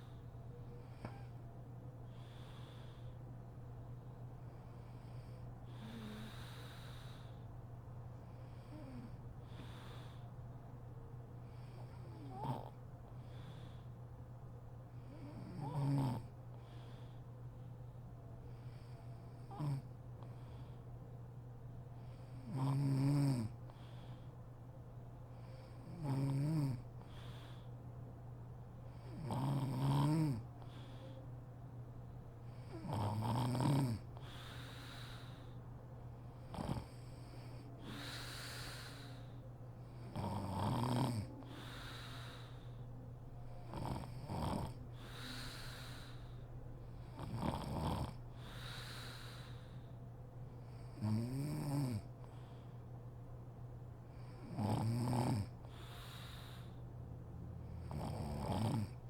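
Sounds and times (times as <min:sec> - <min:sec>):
woman snoring: 0:05.1 - 0:07.3, 0:08.6 - 0:10.1, 0:11.7 - 0:12.8, 0:15.0 - 0:16.4, 0:19.4 - 0:19.9, 0:22.4 - 0:23.6, 0:25.7 - 0:26.8, 0:29.0 - 0:30.8, 0:32.6 - 0:35.4, 0:36.5 - 0:39.3, 0:40.0 - 0:42.6, 0:43.6 - 0:46.2, 0:47.0 - 0:49.6, 0:50.9 - 0:52.1, 0:54.4 - 0:56.8, 0:57.7 - 0:59.0.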